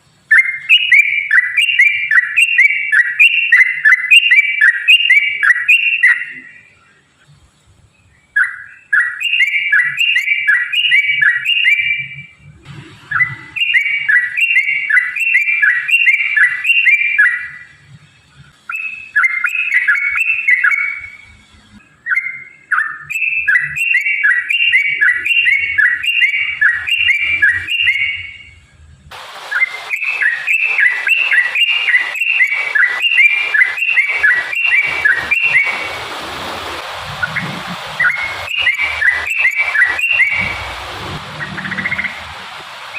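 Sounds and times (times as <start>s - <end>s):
background hiss: 0.0s - 42.9s
bird singing chattering notes: 0.3s - 7.0s, 13.0s - 17.8s, 18.6s - 28.6s, 29.6s - 36.0s, 37.2s - 42.5s.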